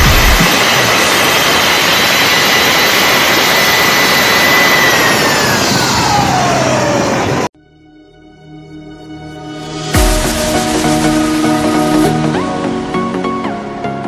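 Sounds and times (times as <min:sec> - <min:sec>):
rushing wind: 0:00.0 - 0:07.5.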